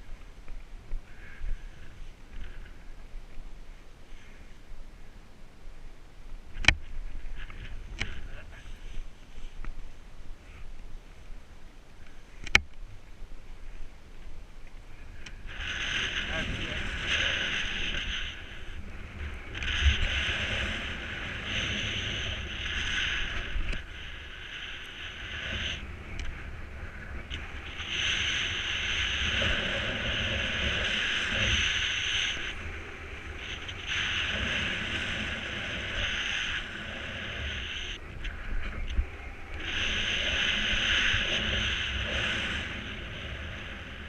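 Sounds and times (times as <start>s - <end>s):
wind hiss: 0.0s - 44.0s
wind buffeting microphone: 12.4s - 44.0s.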